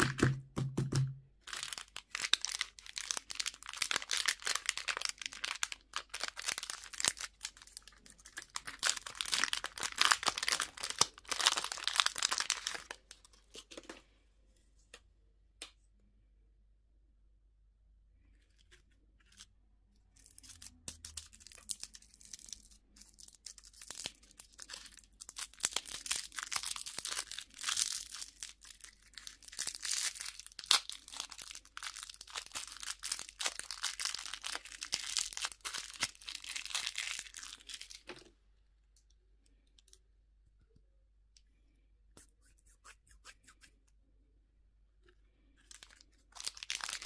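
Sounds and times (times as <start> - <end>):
wrapper being crumpled and torn: 1.4 - 13.9, 20.1 - 38.2, 45.5 - 47.0.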